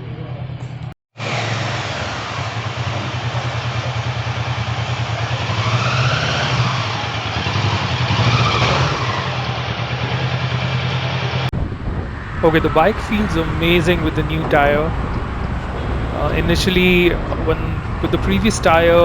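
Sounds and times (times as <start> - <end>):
road noise: 0.0 - 19.0
motorcycle engine running: 1.3 - 11.8
wind noise: 11.5 - 19.0.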